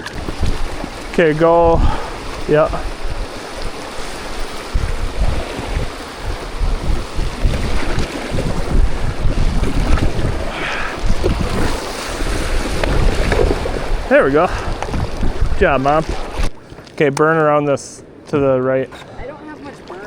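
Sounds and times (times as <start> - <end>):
whitewater river rushing: 0.0 - 16.5
wind buffeting microphone: 0.0 - 17.0.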